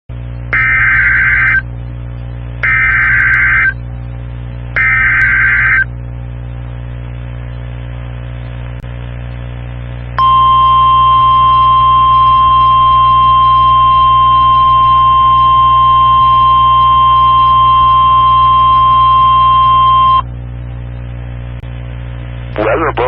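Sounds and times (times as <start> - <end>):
steady hum: 0.1 - 23.0
warbling data tones: 0.6 - 1.6, 2.6 - 3.8, 4.8 - 5.9
warning alarm tone: 0.6 - 1.6, 2.6 - 3.8, 4.8 - 5.9, 10.2 - 20.2.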